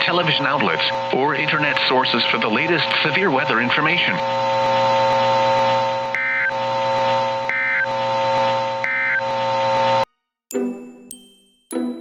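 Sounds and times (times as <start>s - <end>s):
steady buzzing alarm tone: 3.8s - 10.0s
data-burst chirps: 7.4s - 8.0s.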